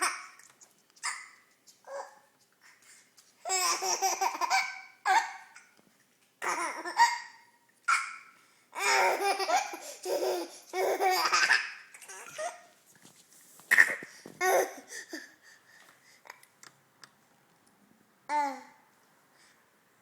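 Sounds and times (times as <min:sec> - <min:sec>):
baby laughing: 0:03.4 - 0:05.4, 0:06.4 - 0:08.2, 0:08.8 - 0:12.7, 0:13.7 - 0:15.4
faint breaths: 0:14.0 - 0:16.4, 0:19.1 - 0:19.8.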